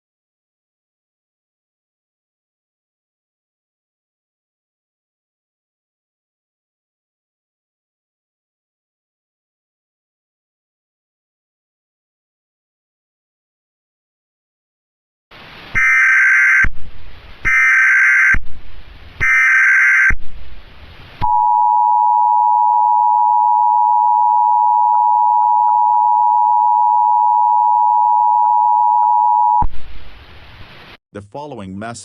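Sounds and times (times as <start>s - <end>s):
data burst tones: 17.4s - 18.5s, 19.2s - 20.2s, 21.2s - 29.9s
two-tone attention signal: 21.2s - 29.7s.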